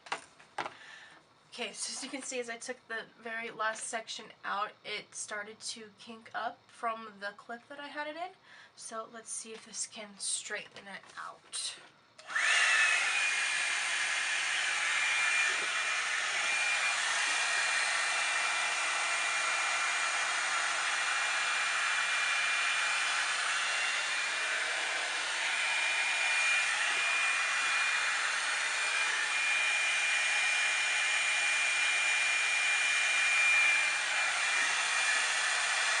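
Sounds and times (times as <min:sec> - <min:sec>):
dryer brush blowing air: 0:12.2 - 0:36.0.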